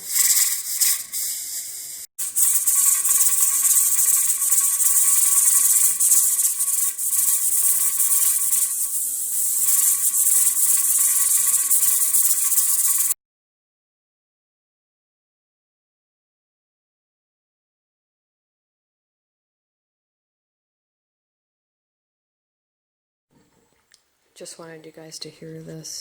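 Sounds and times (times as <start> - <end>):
pressure canner steam hissing: 0.0 - 13.2.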